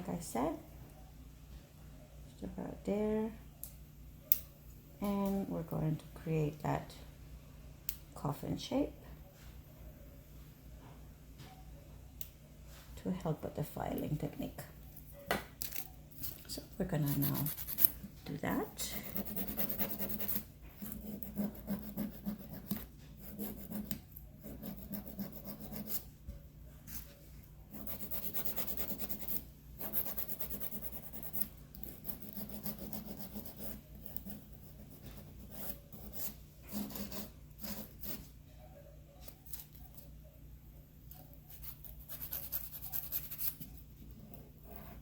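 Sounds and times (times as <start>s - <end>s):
nail file rasping on plastic: 17.0s - 18.0s.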